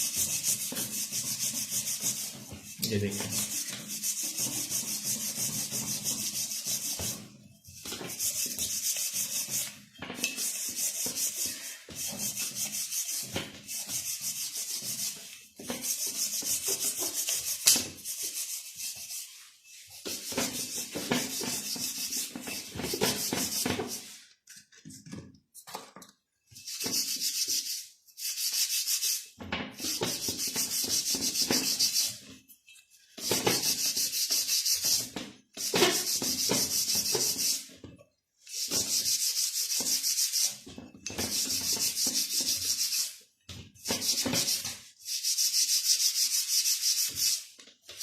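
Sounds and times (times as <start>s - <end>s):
scrubbing wheel hub: 0.0s - 24.3s, 26.6s - 32.2s.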